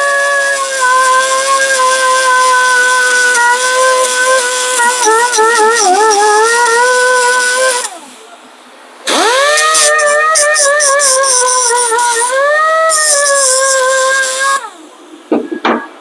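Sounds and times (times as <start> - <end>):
cut-off tool grinding metal: 0.0 - 8.0, 9.1 - 14.8.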